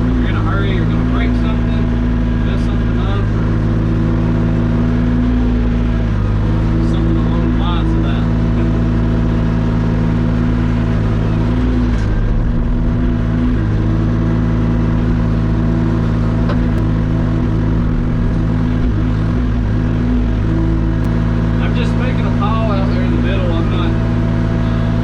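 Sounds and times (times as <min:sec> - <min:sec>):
excavator engine running: 0:00.0 - 0:25.0.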